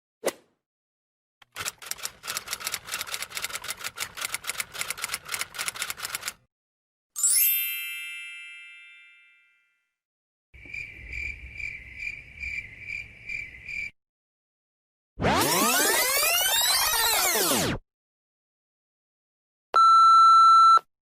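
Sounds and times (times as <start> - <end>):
typewriter keys clattering: 1.4 - 6.4.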